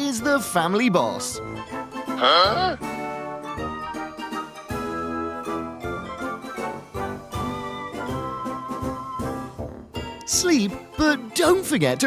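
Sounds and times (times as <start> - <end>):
jazzy swing music with brass: 2.8 - 11.0.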